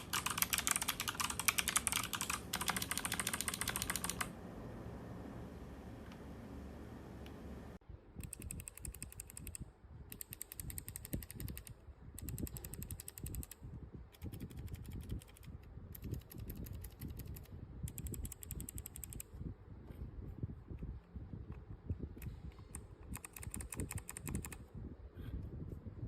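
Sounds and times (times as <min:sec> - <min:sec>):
mechanical keyboard typing: 0:00.0 - 0:04.3, 0:08.2 - 0:13.6, 0:14.2 - 0:19.2, 0:23.0 - 0:24.6.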